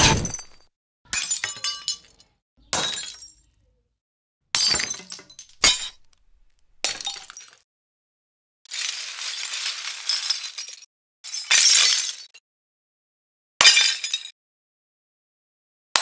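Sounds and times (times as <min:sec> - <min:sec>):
glass crunching and crackling: 0:00.0 - 0:00.6, 0:04.6 - 0:07.6, 0:08.7 - 0:11.4.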